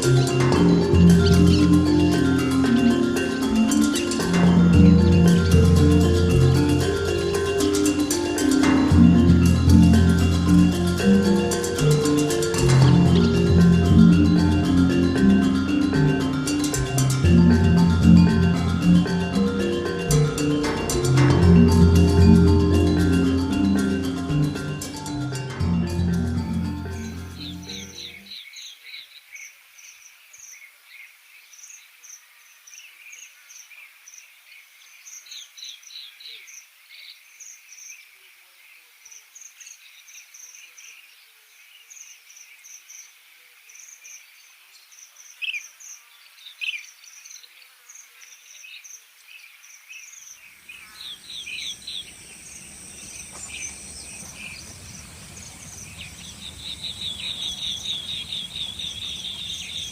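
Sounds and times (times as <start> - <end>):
sharp bird calls: 0.0 - 15.9, 49.6 - 59.9
insects and birds chirping: 0.0 - 59.9.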